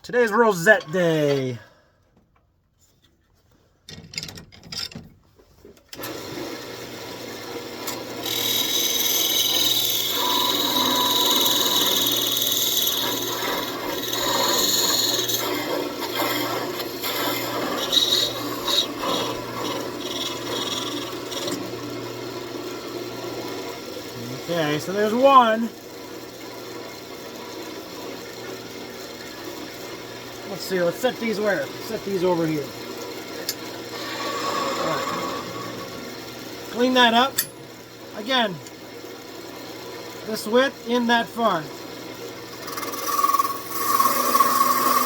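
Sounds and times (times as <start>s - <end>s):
wood lathe humming: 6.0s - 38.1s, 38.7s - 45.0s
turning tool scraping wood: 8.2s - 21.6s, 33.9s - 36.2s, 42.6s - 45.0s.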